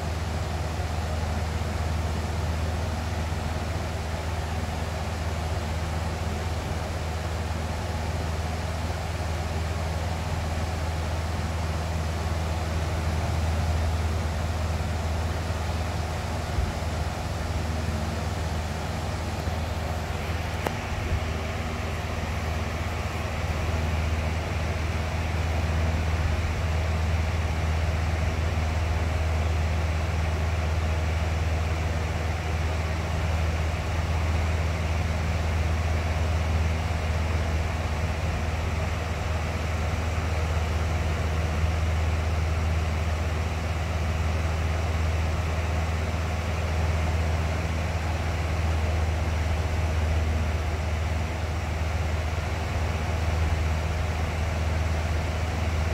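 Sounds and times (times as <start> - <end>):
box fan whooshing: 6.0 - 28.9.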